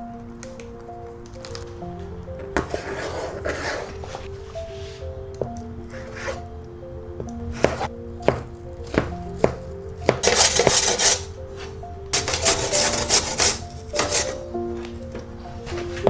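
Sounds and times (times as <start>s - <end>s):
soft background music: 0.0s - 16.0s
knife cutting on cutting board: 7.6s - 11.3s, 12.2s - 14.4s.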